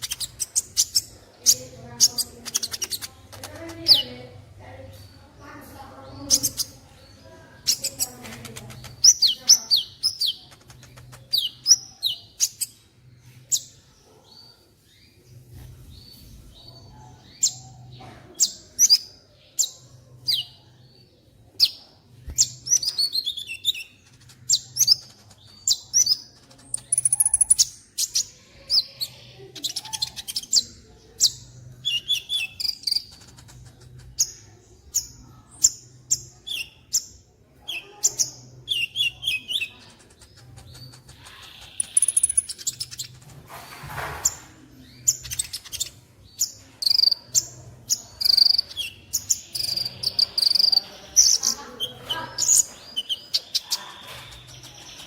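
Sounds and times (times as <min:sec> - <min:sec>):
sunbird sharp high chirps: 0:24.6 - 0:28.2, 0:40.6 - 0:43.1.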